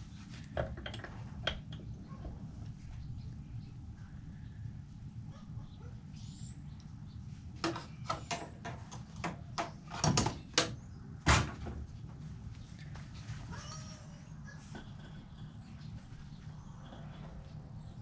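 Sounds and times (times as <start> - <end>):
steady low hum: 0.0 - 18.0
valve parts clicking and knocking: 0.5 - 1.9, 7.6 - 10.8.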